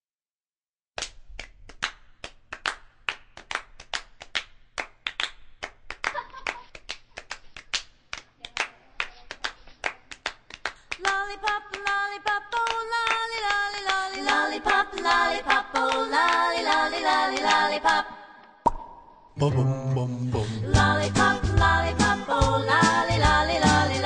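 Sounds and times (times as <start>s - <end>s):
rhythmic hand claps: 1.0s - 18.0s, 20.8s - 24.0s
group singing: 11.1s - 18.5s, 19.4s - 24.0s.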